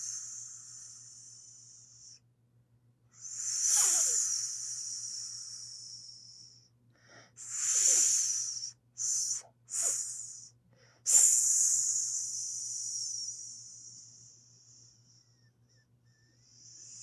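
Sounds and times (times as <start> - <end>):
snake hissing: 0.0 - 2.2, 3.2 - 6.6, 7.4 - 10.5, 11.1 - 14.9, 16.5 - 17.0.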